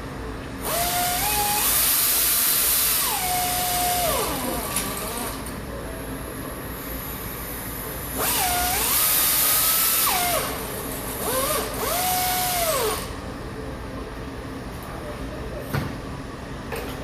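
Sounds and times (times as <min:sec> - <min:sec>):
cordless power driver running: 0:00.6 - 0:05.5, 0:08.2 - 0:10.6, 0:11.2 - 0:13.1.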